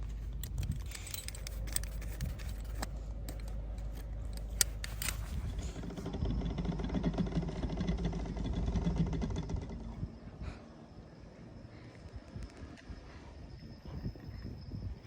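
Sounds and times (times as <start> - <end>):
metallic clicks of rigging: 0.0 - 5.9.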